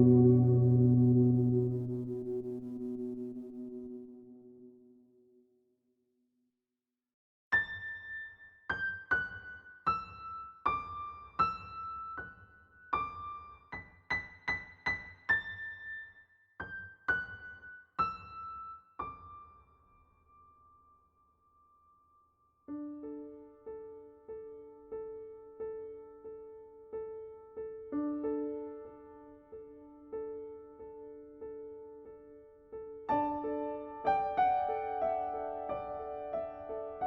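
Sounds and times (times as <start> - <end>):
piano-like keyboard melody: 0.0 - 4.4, 22.7 - 37.0.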